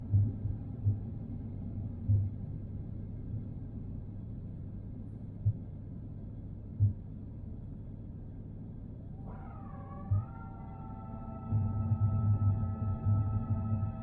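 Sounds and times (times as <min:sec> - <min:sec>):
airplane cabin drone: 0:09.2 - 0:14.0.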